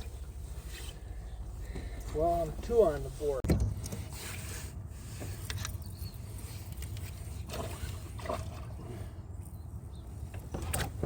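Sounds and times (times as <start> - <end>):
steady low rumble: 0.0 - 3.8.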